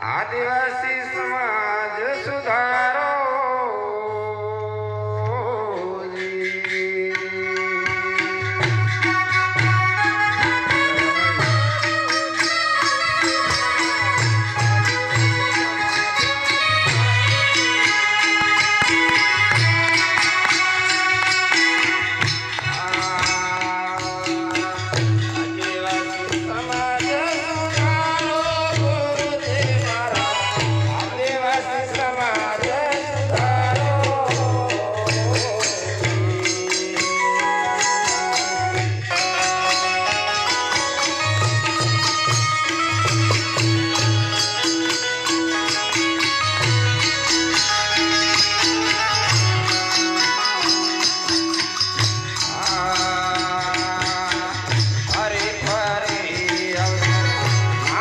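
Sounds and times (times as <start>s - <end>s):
jingling hand percussion: 0.0s - 4.0s, 4.7s - 58.0s
man singing: 0.0s - 8.6s, 10.4s - 44.1s, 47.0s - 58.0s
instrumental accompaniment: 0.0s - 58.0s
drum beating: 7.0s - 58.0s
man singing folk song: 52.5s - 58.0s.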